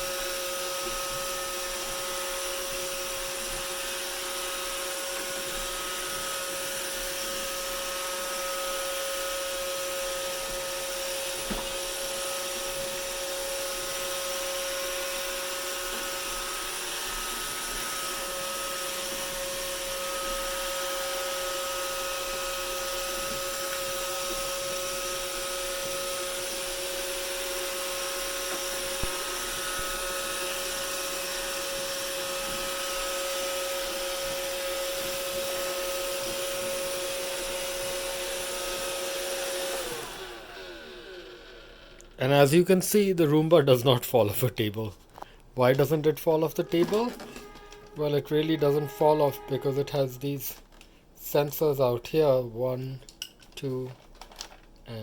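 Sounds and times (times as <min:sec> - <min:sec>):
robot vacuum whirring: 0:00.0 - 0:42.1.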